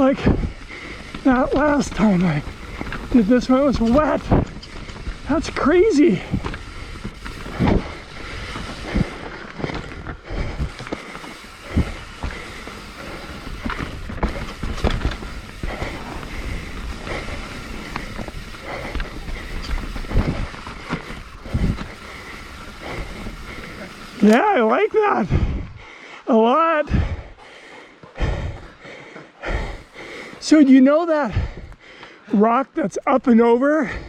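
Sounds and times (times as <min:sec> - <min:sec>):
bike knocks and rattles: 0:00.0 - 0:24.5
bike tyre rushing noise: 0:00.0 - 0:30.6.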